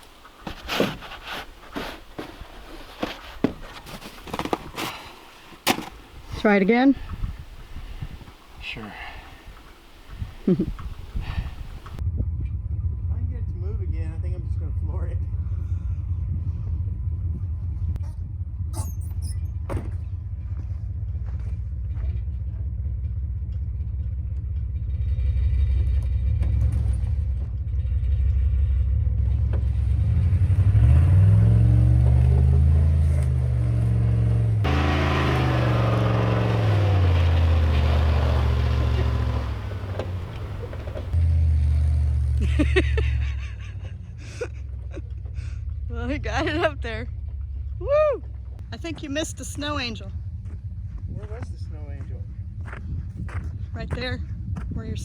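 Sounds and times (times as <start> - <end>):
truck engine revving under load: 0.0 - 12.0, 29.9 - 41.5.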